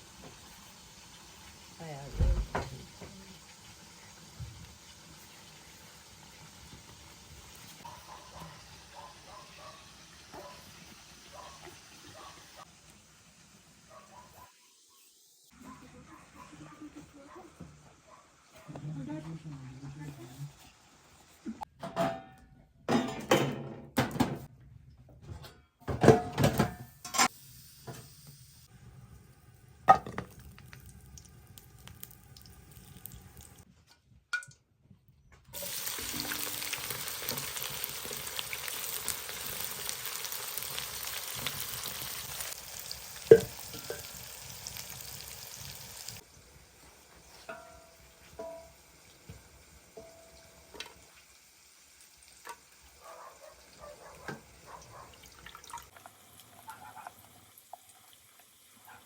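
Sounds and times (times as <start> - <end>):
pots and utensils clanking: 2.1 - 3.2, 21.6 - 24.5, 25.2 - 28.1, 29.9 - 30.5, 35.5 - 39.6, 43.1 - 44.6, 46.8 - 51.1.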